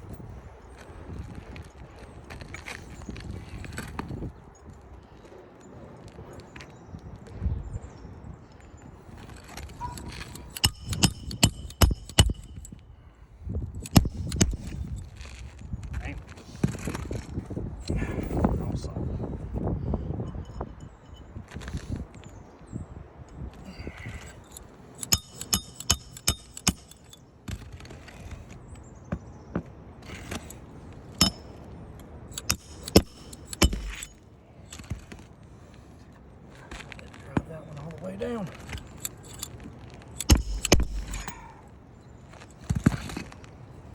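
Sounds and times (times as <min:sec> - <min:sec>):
hammer striking nails: 0:10.0 - 0:12.8, 0:13.8 - 0:14.8, 0:25.0 - 0:27.6, 0:31.2 - 0:31.6, 0:32.4 - 0:34.2, 0:40.2 - 0:41.4.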